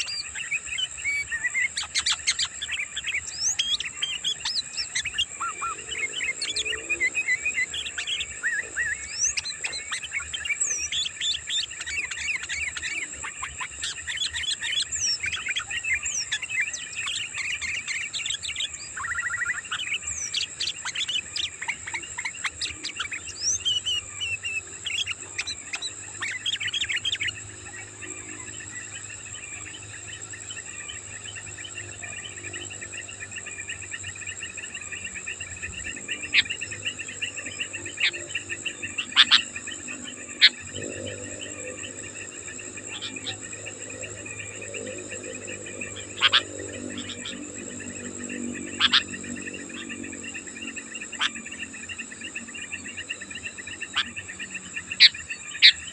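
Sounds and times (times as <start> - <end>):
birds chattering: 0.0 - 55.9
high insect drone: 0.0 - 55.9.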